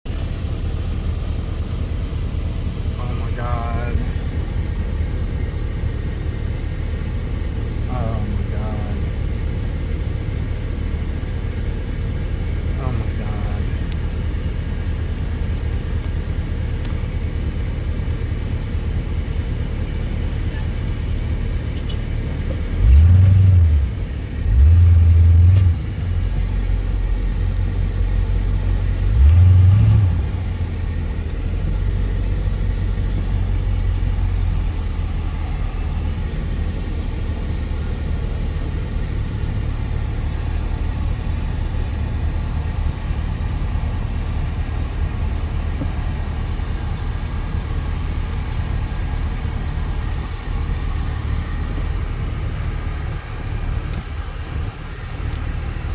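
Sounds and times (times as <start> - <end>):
low rumble with surges: 0.1 - 55.9.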